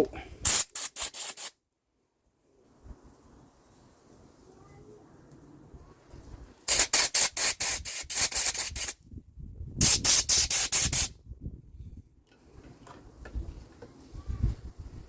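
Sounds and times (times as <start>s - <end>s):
air blow gun bursts: 0.4s - 1.5s, 6.7s - 9.0s, 9.8s - 11.1s.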